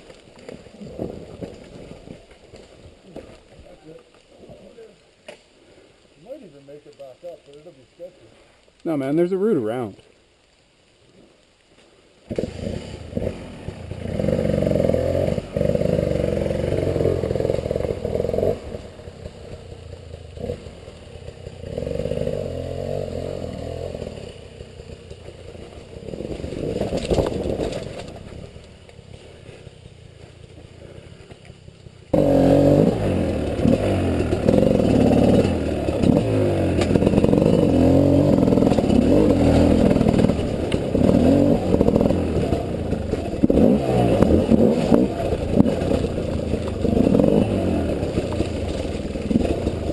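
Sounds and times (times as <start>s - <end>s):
dirt bike engine revving: 12.3s - 28.6s, 32.1s - 49.9s.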